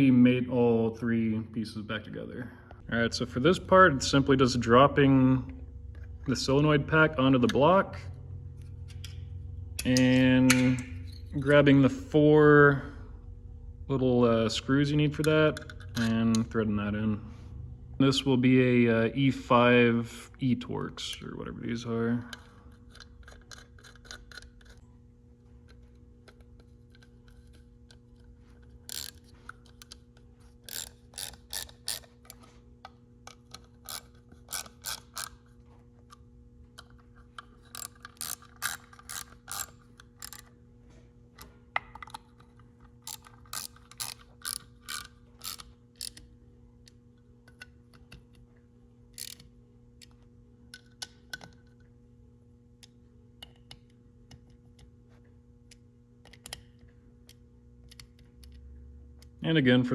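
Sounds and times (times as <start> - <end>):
faint low hum: 0.0 - 59.9
hand ratchet clicking: 22.3 - 24.8, 25.7 - 32.5, 33.2 - 35.5, 36.8 - 40.5, 43.0 - 46.3, 49.1 - 51.5.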